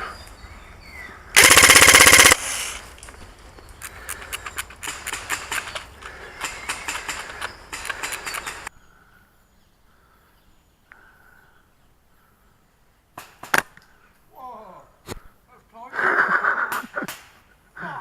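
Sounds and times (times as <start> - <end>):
airsoft guns firing full-auto: 1.4 - 2.5
sharp airsoft shots: 1.4 - 2.5.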